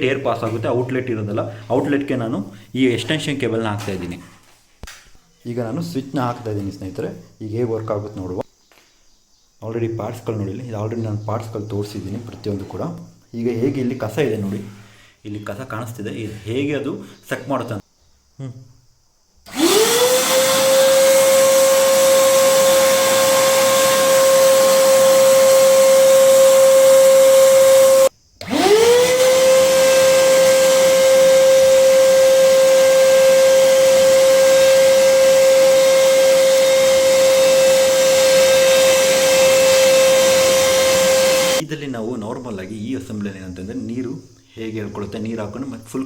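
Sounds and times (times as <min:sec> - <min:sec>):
vacuum cleaner running: 0:19.5 - 0:41.6.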